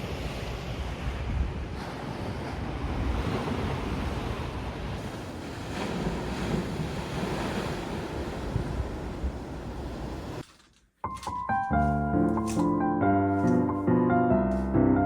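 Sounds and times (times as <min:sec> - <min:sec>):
sea waves washing on shore: 0:00.0 - 0:10.4
wind rumbling on microphone: 0:00.0 - 0:10.4.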